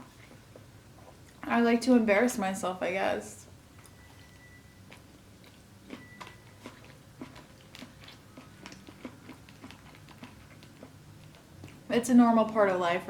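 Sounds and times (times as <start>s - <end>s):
mouth clicks and smacks chewing: 4.9s - 11.9s.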